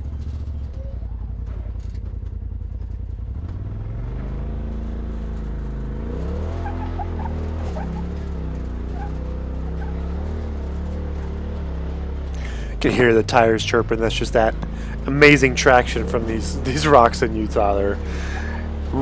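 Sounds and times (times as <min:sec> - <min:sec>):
utv engine climbing: 0:00.0 - 0:19.0.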